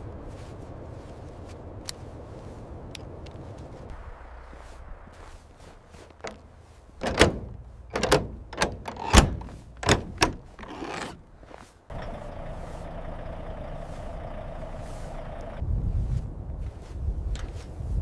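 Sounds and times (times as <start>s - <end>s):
sharp knocks and clanks: 6.1s - 11.4s.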